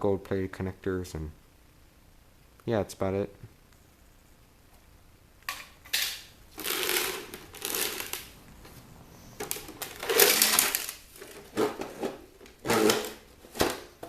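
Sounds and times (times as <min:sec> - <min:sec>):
plastic parts scraping and rustling: 0:05.5 - 0:14.0.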